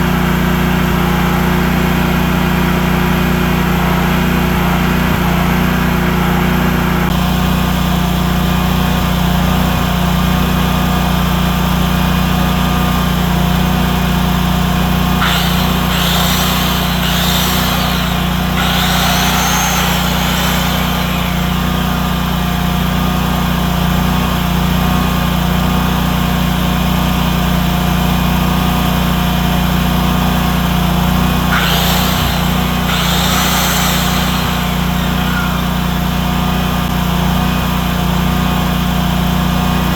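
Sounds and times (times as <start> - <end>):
generator engine running: 15.0 - 23.1, 31.4 - 37.0
high-pitched hissing: 15.2 - 22.0, 31.5 - 36.0.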